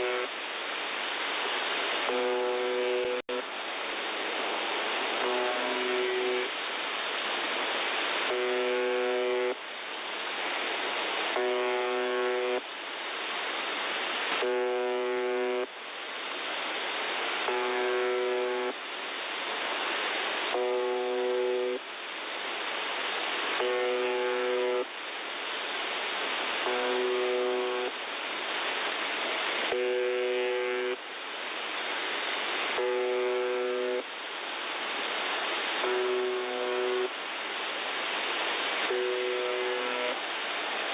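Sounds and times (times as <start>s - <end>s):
shortwave buzz tone: 0.0s - 0.4s, 2.0s - 3.6s, 5.0s - 6.6s, 8.1s - 9.6s, 11.3s - 12.7s, 14.3s - 15.8s, 17.4s - 18.8s, 20.4s - 22.1s, 23.4s - 25.0s, 26.5s - 28.1s, 29.6s - 31.0s, 32.3s - 34.2s, 35.7s - 37.2s, 38.6s - 40.3s
radio static hiss: 0.0s - 40.9s.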